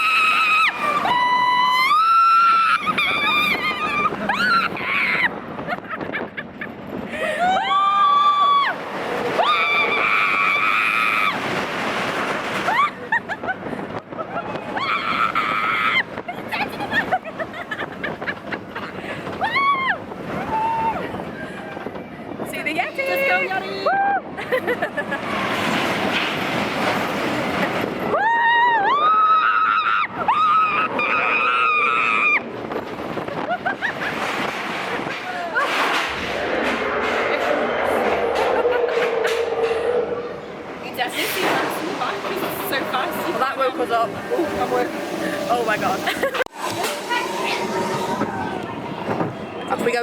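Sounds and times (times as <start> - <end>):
roller coaster ride rushing: 0.0 - 50.0
riders screaming: 7.4 - 11.6, 42.9 - 49.2.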